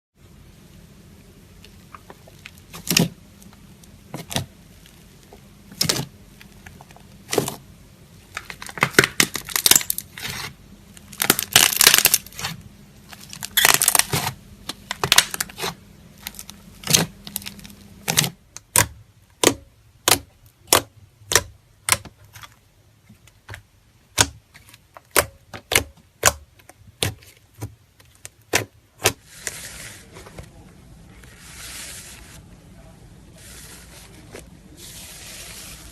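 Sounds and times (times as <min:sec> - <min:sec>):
slime popping and crackling: 0:08.3 - 0:22.1.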